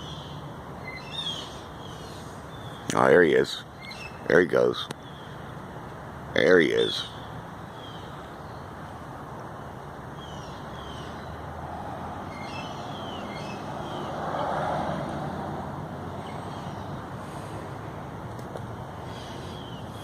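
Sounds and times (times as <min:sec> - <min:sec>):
outdoor background noise: 0:00.0 - 0:20.0
vehicle passing on road: 0:07.1 - 0:20.0.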